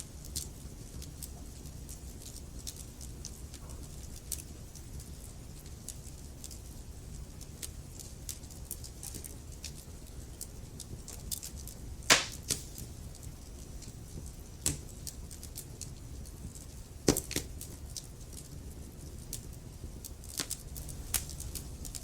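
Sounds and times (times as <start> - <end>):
wood fire crackling: 0.0 - 22.0
logs popping: 12.1 - 12.8.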